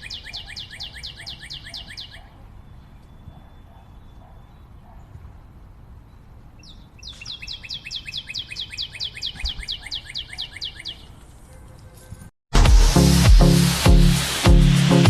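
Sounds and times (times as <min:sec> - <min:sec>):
bird singing fast trill: 0:00.0 - 0:03.4, 0:06.6 - 0:11.1.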